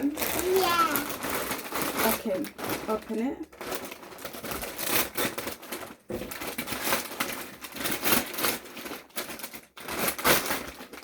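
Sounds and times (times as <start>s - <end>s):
wrapping paper tearing and rustling: 0.0s - 11.0s.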